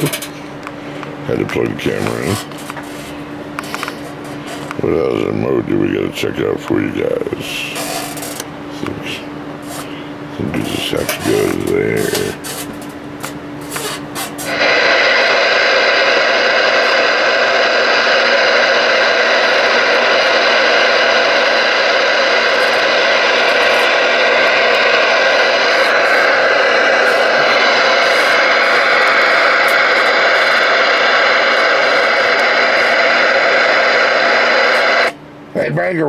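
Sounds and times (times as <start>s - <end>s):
radio static hiss: 1.2s - 36.0s.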